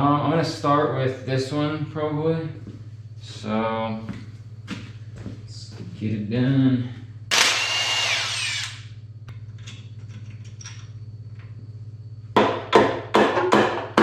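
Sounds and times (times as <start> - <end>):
power tool winding down: 7.3 - 8.9.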